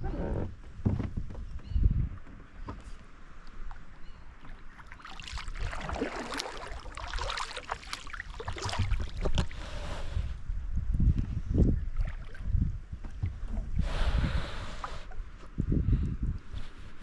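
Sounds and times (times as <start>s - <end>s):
wind buffeting microphone: 0.0s - 2.9s, 8.2s - 17.0s
water splashing around a kayak: 3.4s - 10.4s, 11.6s - 15.4s.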